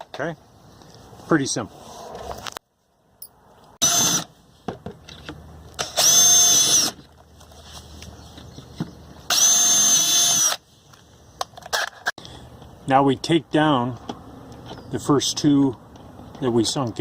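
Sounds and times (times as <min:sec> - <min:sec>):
electric drill whining: 0:03.8 - 0:04.3, 0:05.8 - 0:07.0, 0:09.3 - 0:10.6.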